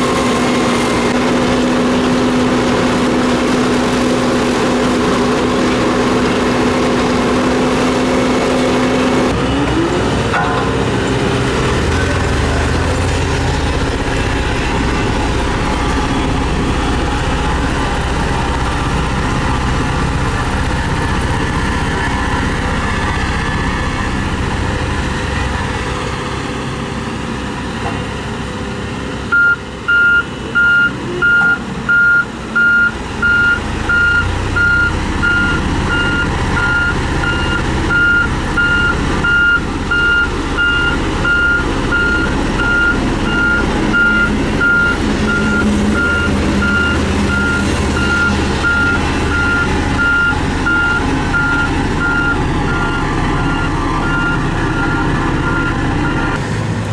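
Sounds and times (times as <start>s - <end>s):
heavy vehicle engine running: 0.0s - 56.9s
reversing alarm beeping: 29.3s - 56.4s.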